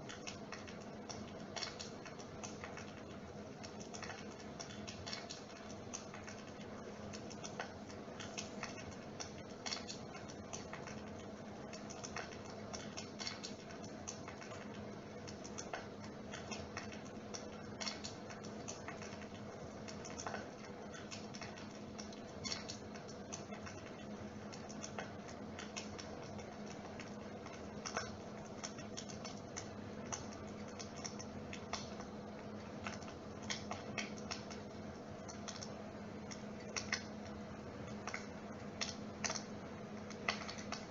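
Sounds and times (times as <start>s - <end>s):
steady electric hum: 0.0s - 40.9s.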